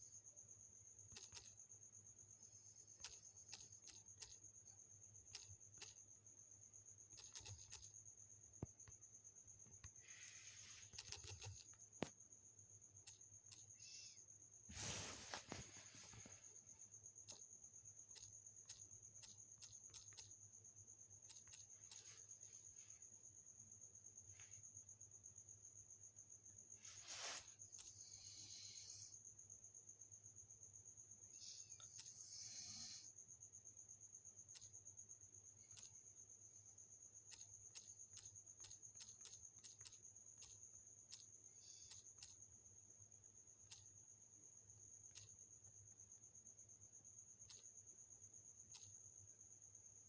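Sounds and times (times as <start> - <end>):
faint clicks: 1.1 - 1.6, 2.9 - 4.5, 5.2 - 6.0, 7.1 - 8.0, 9.6 - 12.2, 13.0 - 13.9, 18.1 - 20.4, 21.2 - 22.2, 34.5 - 34.8, 35.6 - 36.0, 37.3 - 42.4, 43.6 - 43.9, 45.1 - 45.4, 47.4 - 47.7, 48.6 - 49.0.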